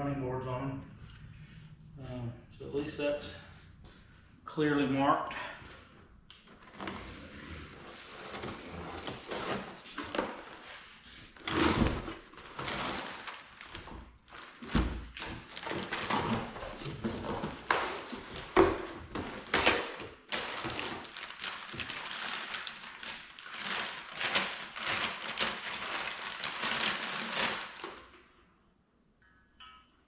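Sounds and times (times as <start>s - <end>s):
cardboard and plastic rustling: 6.4s - 28.3s.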